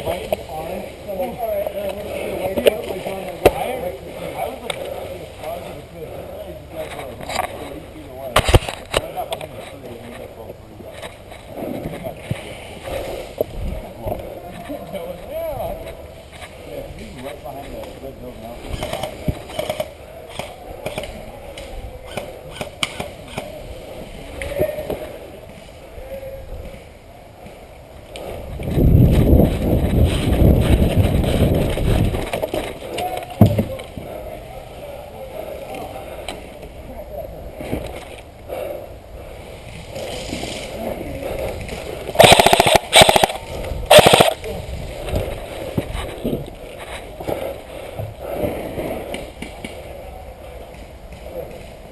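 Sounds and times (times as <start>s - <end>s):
faint distant voices: 0.0s - 30.8s, 31.9s - 51.9s
airsoft gun full-auto bursts: 42.2s - 44.4s.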